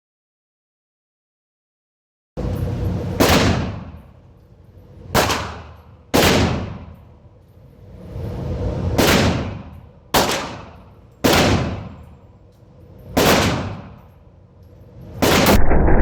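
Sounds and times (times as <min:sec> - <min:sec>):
echoing gunshots: 0:03.2 - 0:03.9
loud steady noise: 0:15.2 - 0:16.0.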